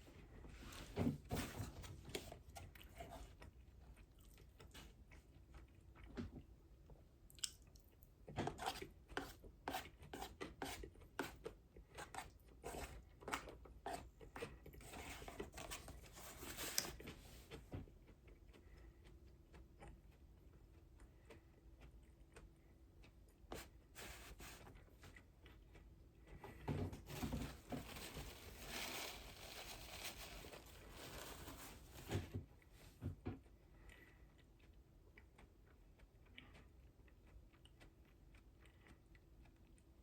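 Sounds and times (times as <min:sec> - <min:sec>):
person chewing crunchy food: 0:17.8 - 0:23.9, 0:24.6 - 0:26.6, 0:33.4 - 0:40.0.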